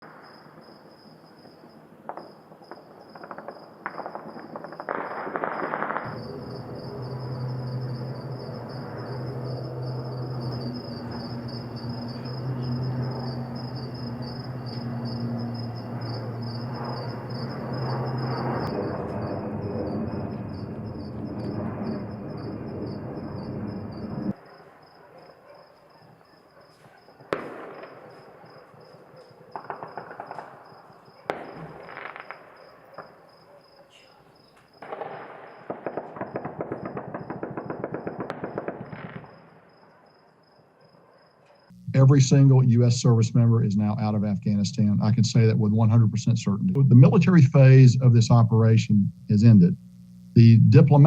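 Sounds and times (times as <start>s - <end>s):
gunfire and fireworks crackling: 0.0s - 40.0s
insects chirping: 0.0s - 51.0s
steady low hum: 6.0s - 24.4s, 41.7s - 51.0s.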